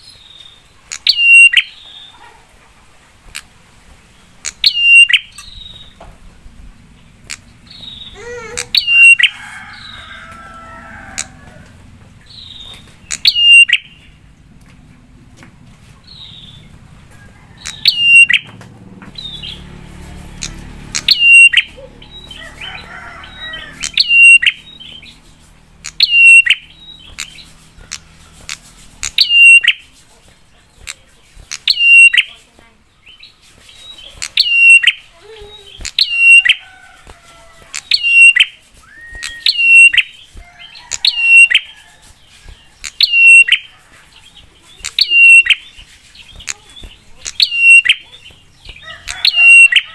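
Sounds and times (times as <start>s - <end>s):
bird repeating sharp call: 7.3s - 10.0s, 17.6s - 18.5s, 20.4s - 22.8s, 23.4s - 24.6s, 25.8s - 27.3s, 37.8s - 40.1s, 40.9s - 41.7s, 47.4s - 48.0s, 49.1s - 49.9s.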